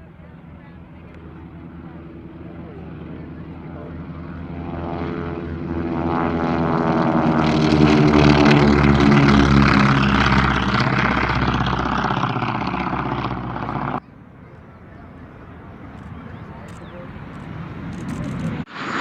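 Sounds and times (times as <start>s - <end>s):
propeller airplane flying past: 0.0s - 19.0s.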